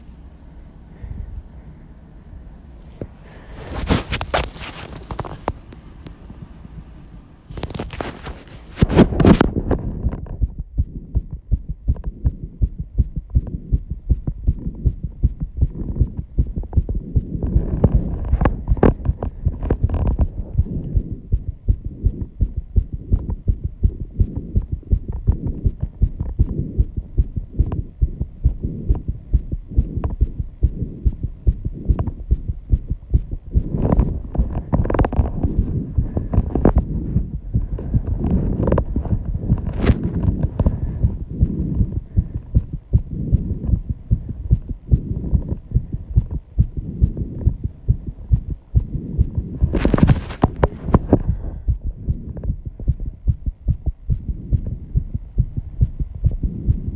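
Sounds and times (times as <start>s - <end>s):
fast heartbeat thumps: 2.3s - 56.9s.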